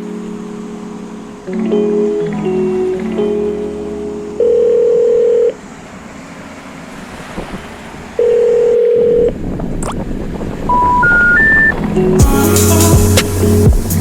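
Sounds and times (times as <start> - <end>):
telephone ringing tone: 0.0 - 5.6, 8.2 - 9.4, 10.7 - 12.2
short rising beeps: 10.7 - 11.9
faint hiss: 12.2 - 14.0.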